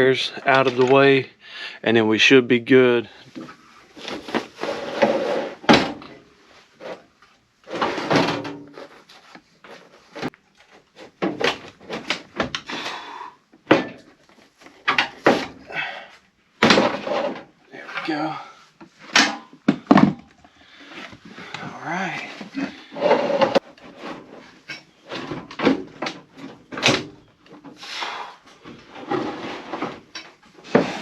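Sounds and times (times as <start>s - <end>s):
sheet metal scraping and rattling: 4.0s - 6.2s, 7.6s - 13.0s, 16.6s - 19.5s, 22.0s - 27.0s, 28.6s - 31.0s.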